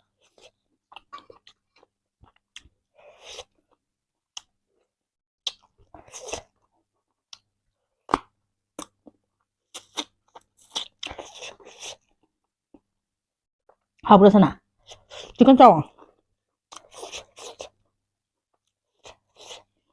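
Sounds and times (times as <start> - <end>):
chewing and crunching chicken: 0.0 - 3.8, 5.4 - 12.3, 15.9 - 17.9.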